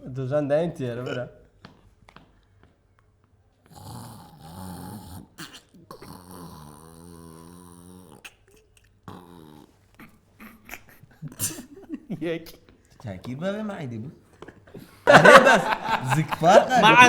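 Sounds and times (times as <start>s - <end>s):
stomach growling: 3.5s - 11.7s.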